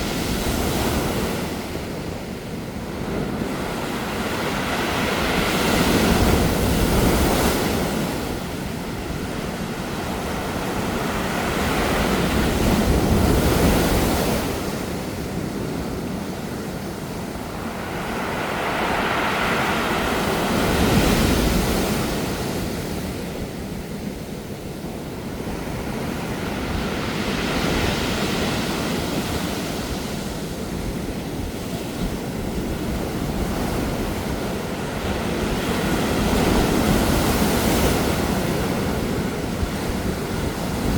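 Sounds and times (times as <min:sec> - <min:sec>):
waves on pebble beach: 0:03.2 - 0:23.1.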